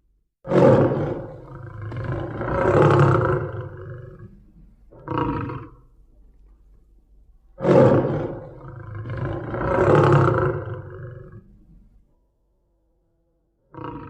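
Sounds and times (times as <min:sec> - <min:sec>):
lion roaring: 0:00.4 - 0:05.8, 0:07.6 - 0:11.5, 0:13.7 - 0:14.0.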